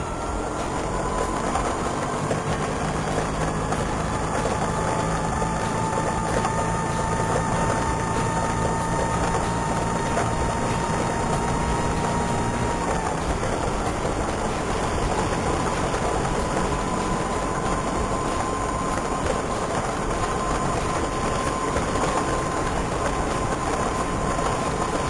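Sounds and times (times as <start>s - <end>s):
high siren-like whine: 0.0s - 25.0s
scooter engine running: 0.0s - 25.0s.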